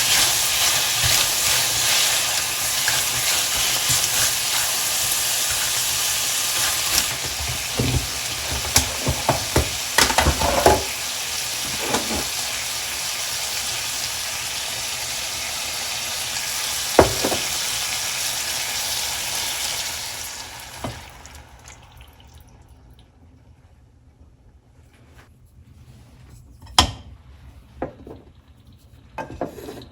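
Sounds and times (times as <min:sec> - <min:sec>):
utensil scraping a pan: 0:00.0 - 0:11.0, 0:11.6 - 0:12.4, 0:29.2 - 0:29.9
food sizzling in a frying pan: 0:00.0 - 0:22.4.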